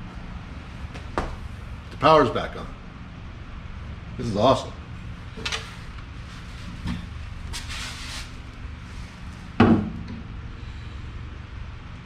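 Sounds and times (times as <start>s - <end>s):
steady low hum: 0.0s - 12.0s
scraping rustle: 5.4s - 9.2s.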